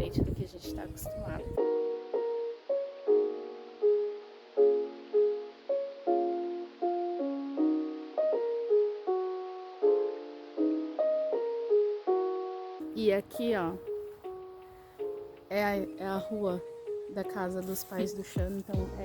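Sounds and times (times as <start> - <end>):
gentle keyboard melody: 0.0 - 19.0.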